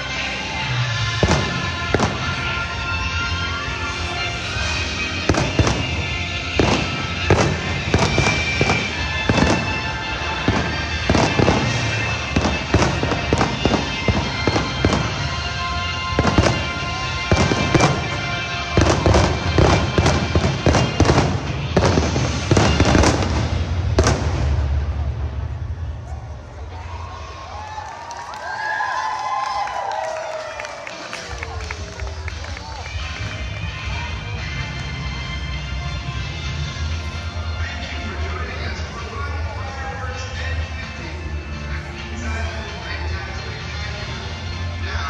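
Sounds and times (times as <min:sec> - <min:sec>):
music playing: 0:00.0 - 0:45.0
fireworks bangs and crackles: 0:00.6 - 0:26.0.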